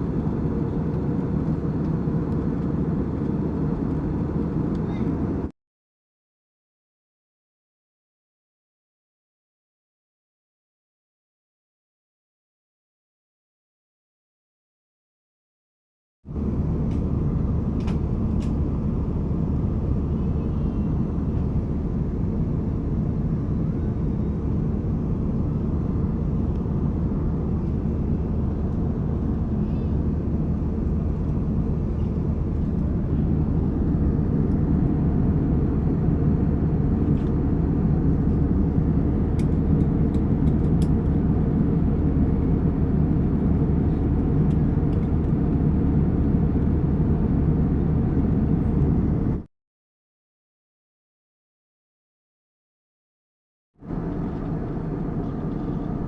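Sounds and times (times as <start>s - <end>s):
airplane engine drone: 0.0s - 5.5s, 16.3s - 49.5s, 53.8s - 56.0s
airflow noise in cabin: 0.0s - 5.6s, 16.3s - 49.5s, 53.8s - 56.0s.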